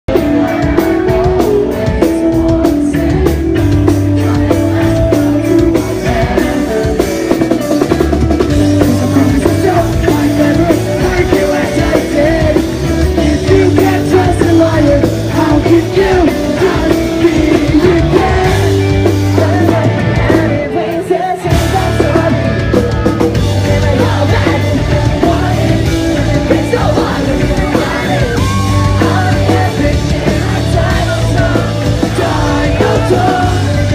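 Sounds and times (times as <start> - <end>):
amplified rock instruments: 0.1 - 33.9
drum kit: 0.1 - 33.9
person singing: 0.1 - 33.9.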